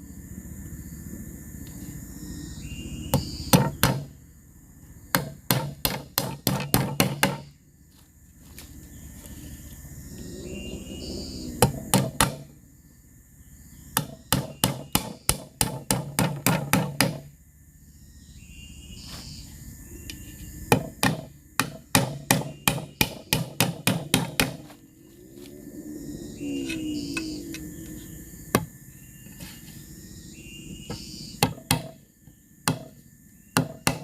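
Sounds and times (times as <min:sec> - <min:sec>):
hammer striking bamboo: 0:03.1 - 0:04.2, 0:05.1 - 0:07.5, 0:11.6 - 0:12.5, 0:14.0 - 0:17.3, 0:20.7 - 0:24.7, 0:31.4 - 0:32.0, 0:32.7 - 0:33.0, 0:33.6 - 0:34.0.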